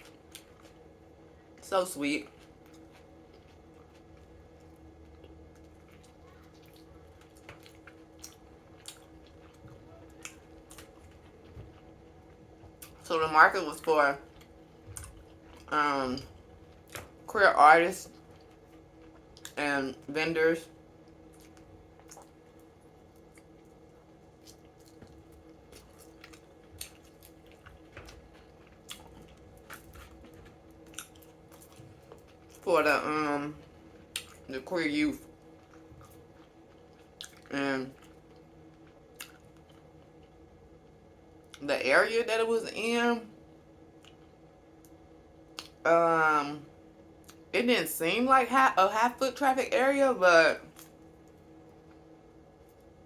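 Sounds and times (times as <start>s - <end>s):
wet chewing: 0.0s - 1.5s, 2.2s - 13.0s, 14.2s - 17.3s, 18.0s - 19.6s, 20.7s - 34.6s, 35.2s - 41.6s, 44.0s - 45.8s, 47.2s - 47.5s, 50.7s - 52.9s
low steady hum: 0.0s - 53.0s.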